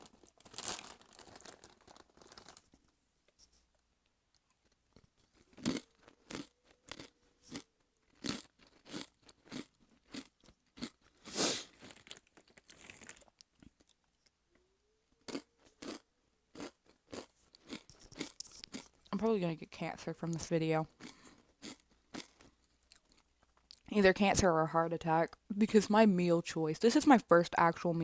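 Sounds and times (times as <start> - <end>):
chips crunching while chewed: 0.0 - 2.6, 4.3 - 14.3, 15.2 - 19.3, 20.3 - 23.9.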